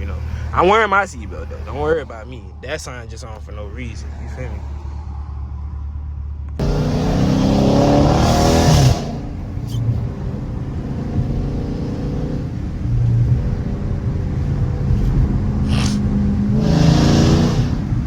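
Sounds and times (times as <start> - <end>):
car engine accelerating hard: 6.6 - 18.0.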